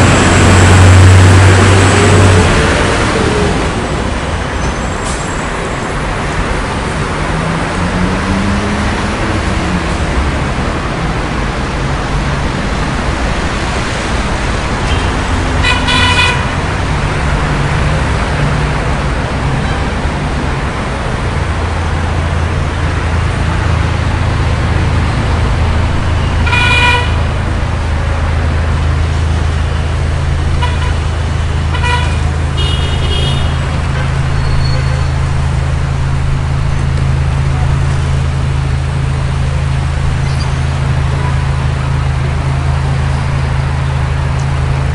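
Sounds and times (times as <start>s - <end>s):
traffic rumble: 0.0s - 44.9s
car horns honking: 14.8s - 16.6s, 26.2s - 27.3s, 30.6s - 31.0s, 31.6s - 35.2s.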